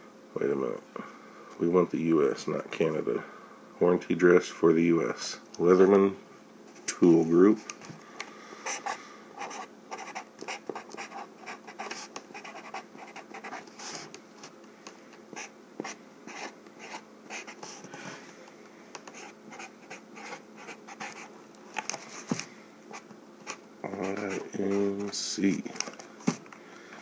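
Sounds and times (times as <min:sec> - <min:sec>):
pen scratching on cardboard: 0:08.7 - 0:14.0, 0:15.4 - 0:17.8, 0:19.1 - 0:21.3, 0:22.9 - 0:25.2.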